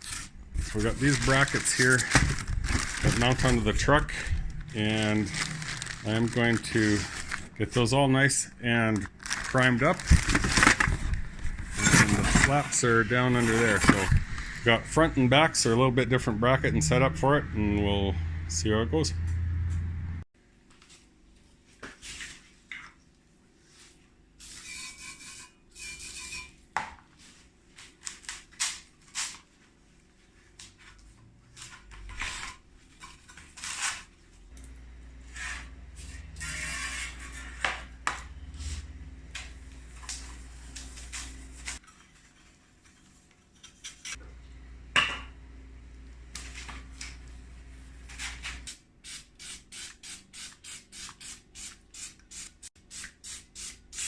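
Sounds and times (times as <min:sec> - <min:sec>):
low hum: 0:00.4 - 0:20.3, 0:34.5 - 0:41.8, 0:44.2 - 0:48.7.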